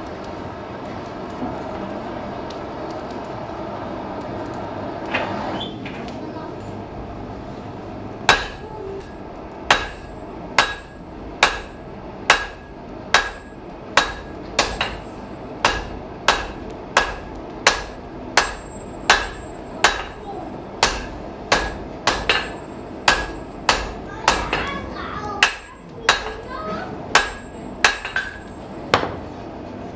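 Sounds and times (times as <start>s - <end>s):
hammer striking iron on anvil: 8.3s - 24.8s, 25.4s - 26.5s, 27.1s - 29.2s.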